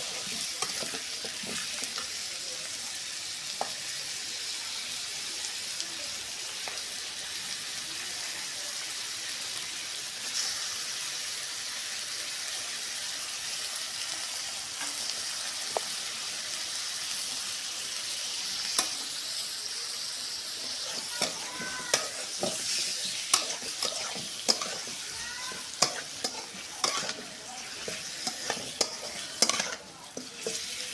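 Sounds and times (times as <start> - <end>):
utensil clicking on pan: 0.0 - 2.1, 18.6 - 19.1, 20.7 - 30.9
food sizzling in hot oil: 0.0 - 30.9.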